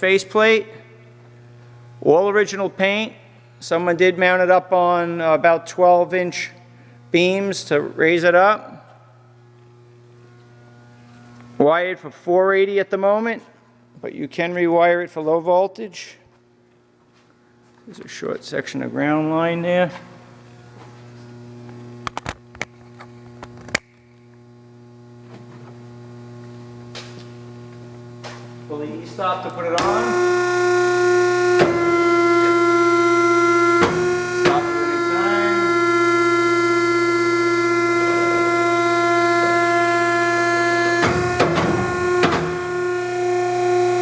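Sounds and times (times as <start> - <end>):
electrical mains hum: 0.0 - 44.0
sharp clicks and knocks: 31.1 - 36.0, 37.6 - 43.5
sharp knocks: 40.5 - 43.0.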